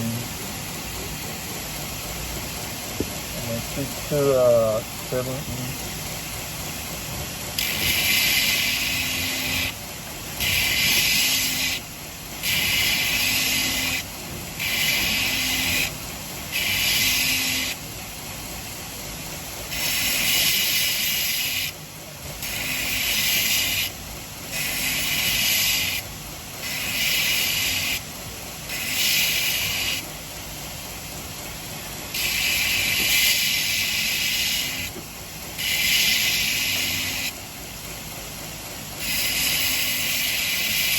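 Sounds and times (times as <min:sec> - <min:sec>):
belt grinder running: 0:06.9 - 0:18.2, 0:19.3 - 0:28.0, 0:28.6 - 0:30.1, 0:32.1 - 0:37.4, 0:38.9 - 0:40.9
blade grinding on belt grinder: 0:07.6 - 0:09.8, 0:10.4 - 0:11.8, 0:12.4 - 0:17.8, 0:19.7 - 0:21.7, 0:22.4 - 0:23.9, 0:24.5 - 0:28.0, 0:28.7 - 0:30.0, 0:32.1 - 0:35.0, 0:35.6 - 0:37.4, 0:39.0 - 0:40.9.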